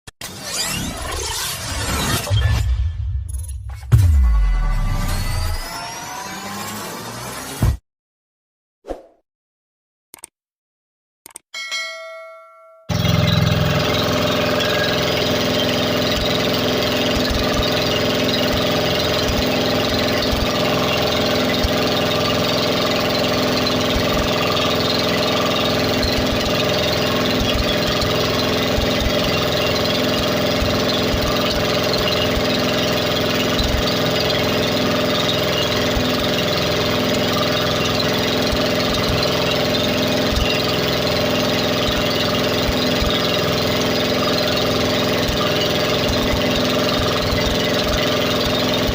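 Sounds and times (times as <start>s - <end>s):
engine idling: 12.9s - 48.9s.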